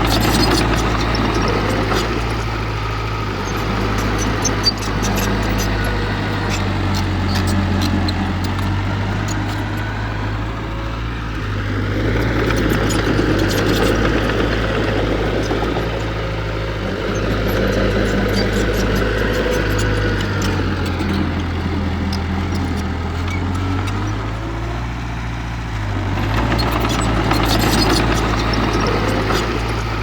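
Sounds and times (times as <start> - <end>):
heavy diesel engine running: 0.0 - 30.0.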